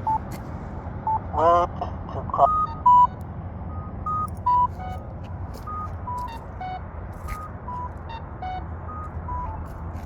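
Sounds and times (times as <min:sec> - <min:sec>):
traffic rumble: 0:00.0 - 0:10.0.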